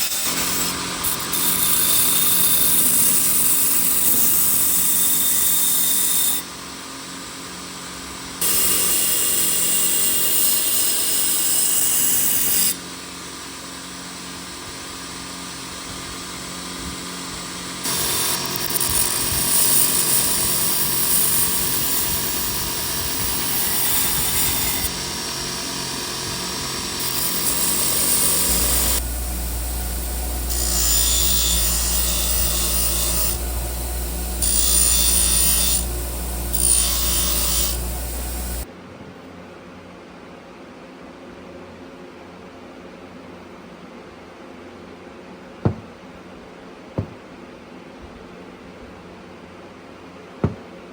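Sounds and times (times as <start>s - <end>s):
power tool working metal: 0.0s - 38.7s
steady low hum: 21.6s - 38.7s.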